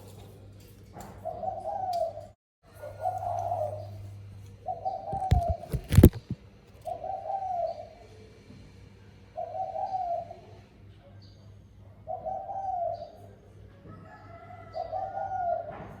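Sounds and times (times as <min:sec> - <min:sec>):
dove cooing: 0:01.2 - 0:02.2, 0:04.6 - 0:06.3, 0:06.9 - 0:08.0, 0:09.4 - 0:10.4, 0:12.1 - 0:13.2, 0:14.3 - 0:15.9.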